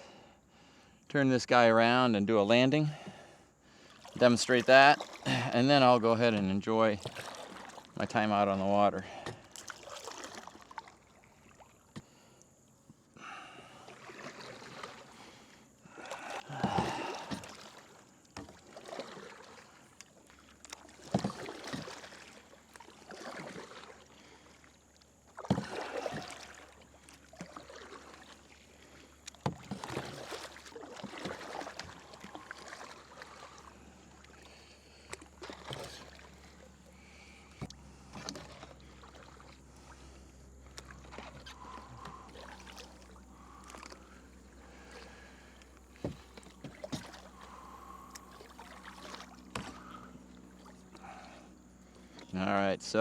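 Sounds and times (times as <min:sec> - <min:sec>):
paddle strokes splashing: 0:02.5 - 0:52.5.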